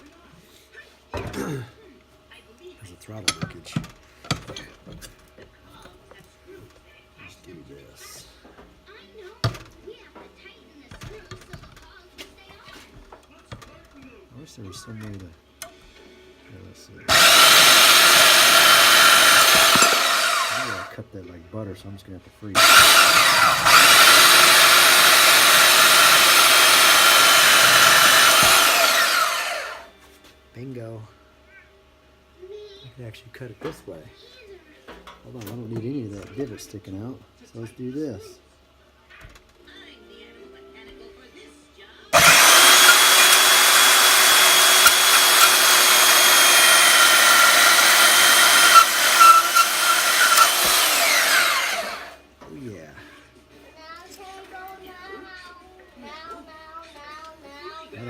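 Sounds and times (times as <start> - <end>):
chop saw cutting metal: 17.1 - 20.9, 22.6 - 29.9, 42.2 - 52.2
saw spinning down: 17.1 - 20.9, 22.6 - 29.9, 42.2 - 52.2.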